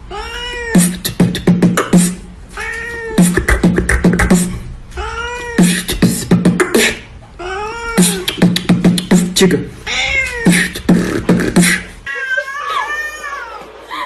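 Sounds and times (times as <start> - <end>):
cat meowing: 0.1 - 0.9, 2.6 - 3.3, 5.0 - 5.9, 7.4 - 8.3, 9.9 - 10.7, 12.1 - 13.7
quick percussive beat: 3.2 - 4.5, 5.6 - 7.0, 8.0 - 9.4, 10.5 - 11.9.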